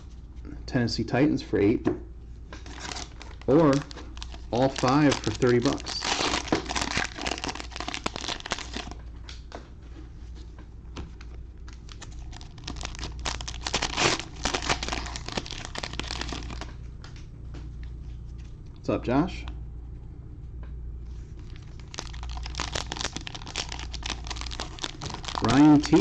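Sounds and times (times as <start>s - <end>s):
card pack wrappers crinkling: 2.6s - 9.0s, 11.7s - 16.8s, 21.4s - 26.0s.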